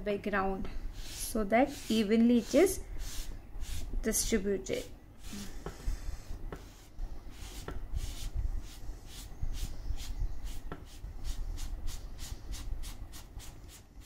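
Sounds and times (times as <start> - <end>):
sponge scratching on paper: 1.0 - 4.3.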